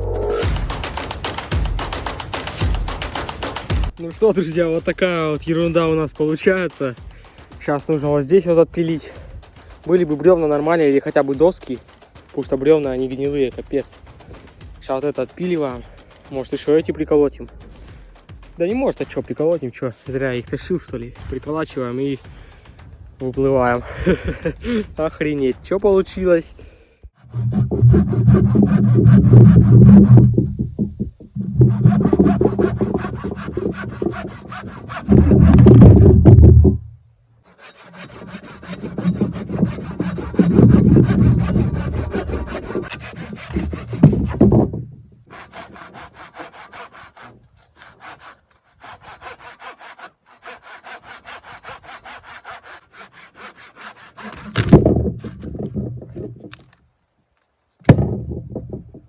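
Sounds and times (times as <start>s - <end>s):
hand saw cutting through log: 27.2s - 36.3s, 37.5s - 56.8s.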